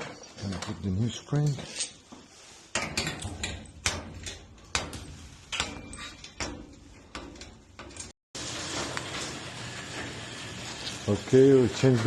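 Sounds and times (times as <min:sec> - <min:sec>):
metal tools clinking: 0:00.0 - 0:02.2, 0:05.5 - 0:08.1.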